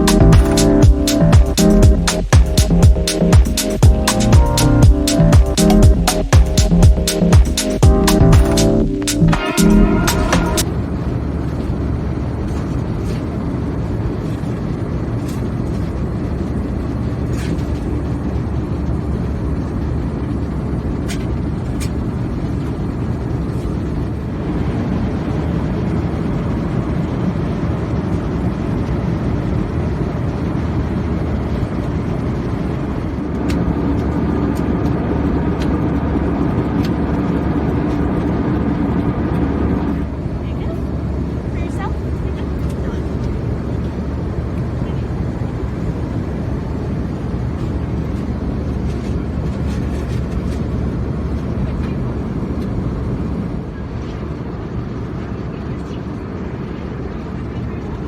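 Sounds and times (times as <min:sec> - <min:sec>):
steady hum: 0:00.0 - 0:54.3
aircraft cabin engine rumble: 0:00.0 - 0:58.0.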